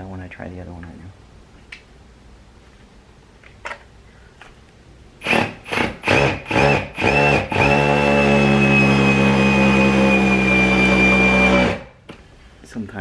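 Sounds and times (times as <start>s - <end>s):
power drill whine: 5.2s - 12.0s.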